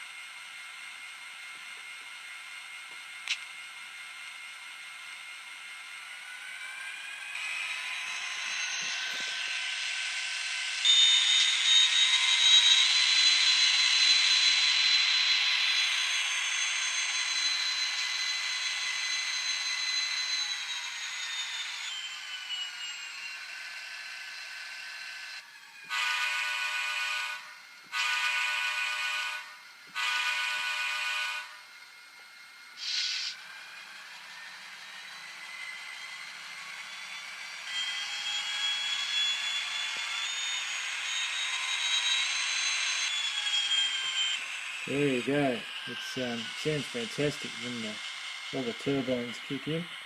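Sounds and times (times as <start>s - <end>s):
model locomotive engine sound: 0.0s - 50.0s
steady high whine: 0.0s - 50.0s
model locomotive air horn blasts: 25.9s - 31.7s.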